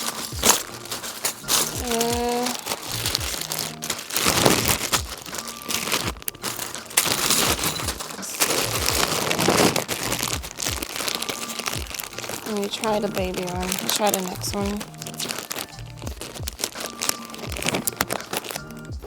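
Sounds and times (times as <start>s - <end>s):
paper rustling and crinkling: 0.0s - 19.0s.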